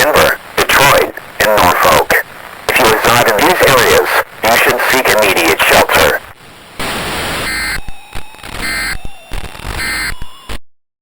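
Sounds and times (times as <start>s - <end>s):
loud static hiss: 0.0s - 10.6s
short electronic data bursts: 6.8s - 10.6s.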